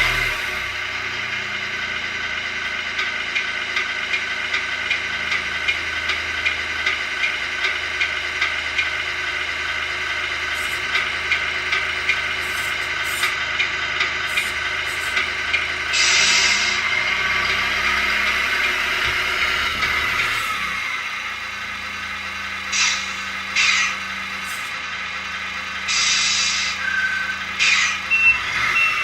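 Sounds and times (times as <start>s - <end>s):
recorded diesel engine idling: 0.0s - 29.0s.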